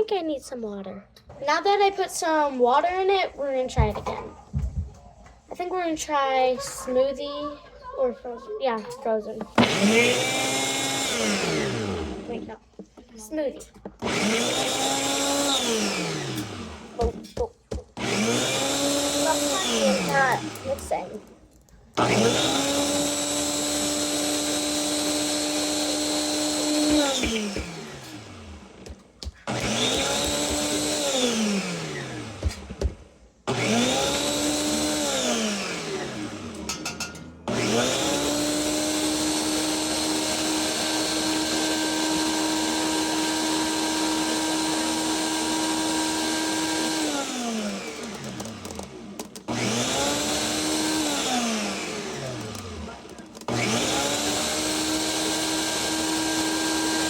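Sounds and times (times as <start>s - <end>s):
blender motor whining: 9.5s - 12.6s, 14.0s - 17.3s, 17.9s - 21.4s, 22.0s - 57.0s.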